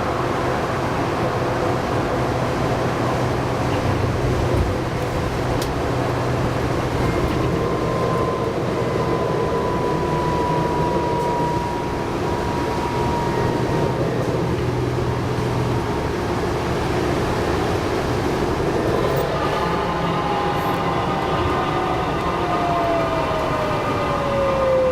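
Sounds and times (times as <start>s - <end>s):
bus engine hum: 0.0s - 24.9s
road noise: 0.0s - 24.9s
high driveline whine: 6.4s - 24.4s.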